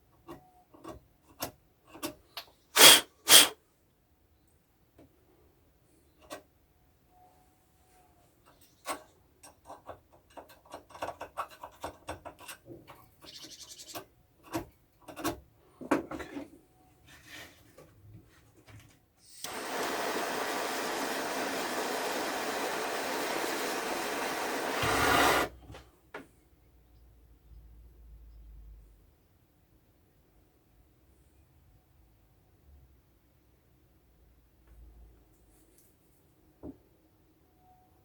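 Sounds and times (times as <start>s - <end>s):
gas blowtorch hissing: 2.8s - 3.5s, 19.4s - 25.6s.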